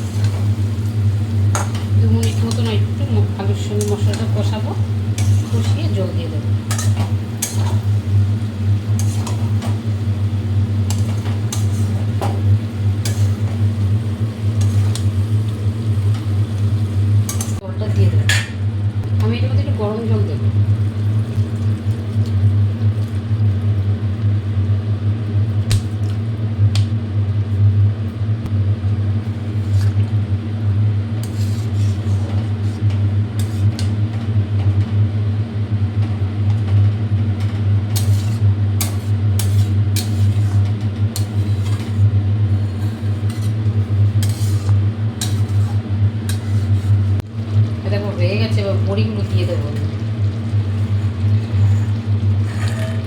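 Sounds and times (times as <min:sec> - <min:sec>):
low electrical hum: 0:00.0 - 0:53.0
spatula clinking and scraping: 0:01.5 - 0:06.0, 0:06.7 - 0:08.2, 0:08.9 - 0:09.8, 0:10.8 - 0:12.4, 0:13.0 - 0:13.7, 0:14.6 - 0:15.1, 0:17.3 - 0:17.6, 0:31.2 - 0:33.9, 0:38.0 - 0:43.6, 0:44.2 - 0:47.0, 0:50.7 - 0:53.0.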